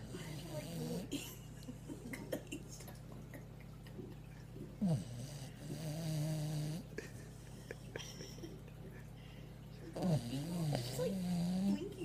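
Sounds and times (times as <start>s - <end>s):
dog snoring: 0.0s - 1.2s, 4.8s - 6.9s, 9.9s - 12.0s
dog snorting: 0.0s - 1.2s, 4.8s - 6.9s, 9.9s - 12.0s.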